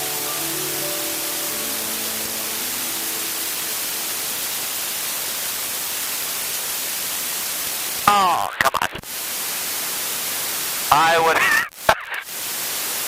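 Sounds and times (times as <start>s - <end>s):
sustained music notes: 0.0s - 5.0s
cockpit noise hiss: 0.0s - 13.0s.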